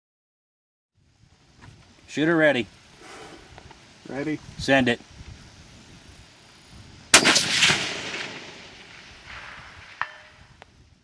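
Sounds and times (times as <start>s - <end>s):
suppressed rifle shot with echo: 7.1s - 10.6s.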